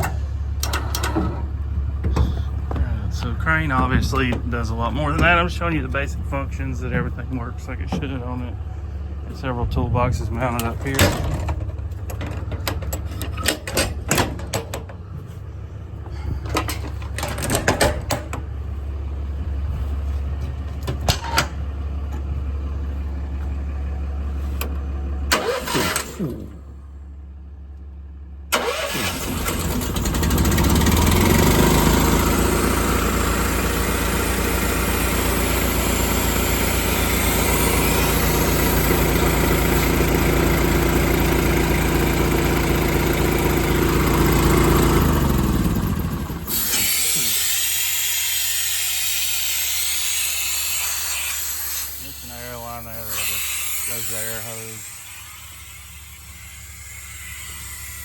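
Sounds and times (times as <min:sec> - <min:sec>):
small gasoline engine running: 0:24.2 - 0:26.9, 0:28.5 - 0:58.0.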